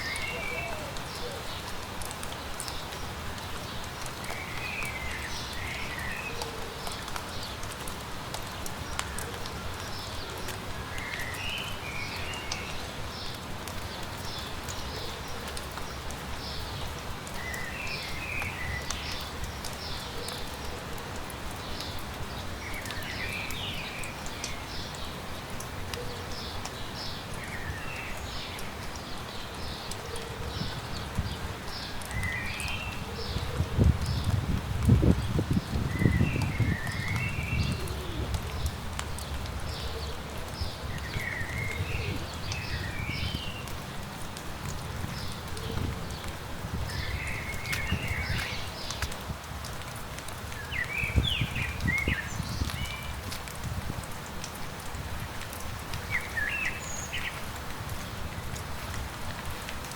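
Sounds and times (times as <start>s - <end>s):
bird song phrase: 0.0s - 1.5s
light rain: 0.0s - 59.9s
footsteps on garden path: 44.4s - 49.8s.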